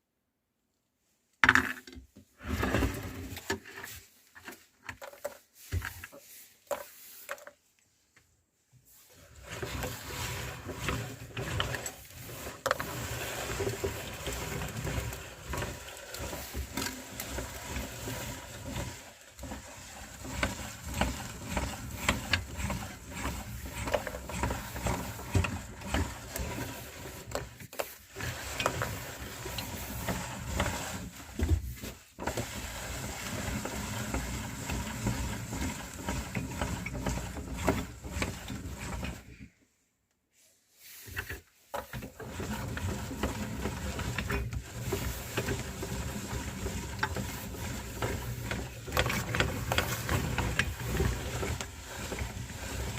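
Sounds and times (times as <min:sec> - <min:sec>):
meat grinder humming: 0:10.0 - 0:27.3.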